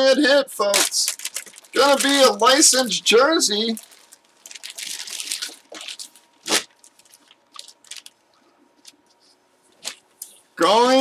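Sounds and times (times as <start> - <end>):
packaging crinkling and rustling: 0.7 - 9.2.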